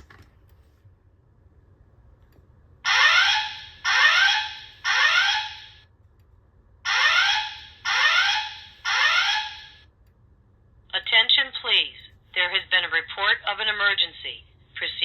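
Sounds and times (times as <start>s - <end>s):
falling-pitch alarm tones: 2.9s - 5.8s, 6.9s - 9.8s.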